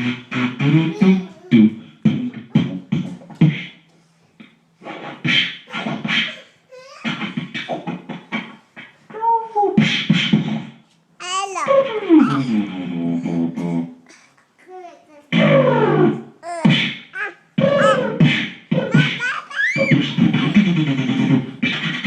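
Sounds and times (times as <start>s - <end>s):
man beatboxing: 0.0s - 6.4s, 7.0s - 9.1s, 9.8s - 10.8s, 11.6s - 14.1s, 15.3s - 22.0s
swooping vocal sound effect: 11.6s - 14.0s, 15.3s - 22.0s.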